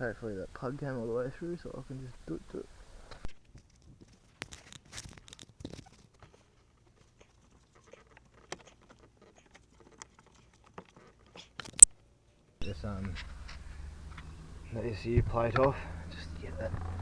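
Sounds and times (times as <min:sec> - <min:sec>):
faint clicks and scrapes of cable: 0:03.2 - 0:11.9.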